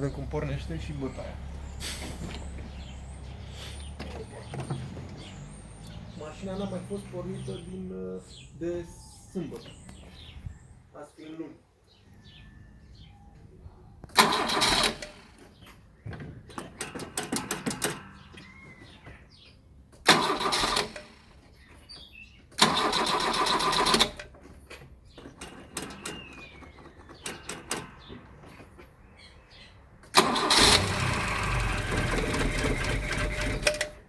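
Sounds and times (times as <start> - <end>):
starter motor cranking engine: 14.1 - 15.6, 16.5 - 19.0, 20.0 - 21.6, 22.5 - 28.1, 30.0 - 34.0.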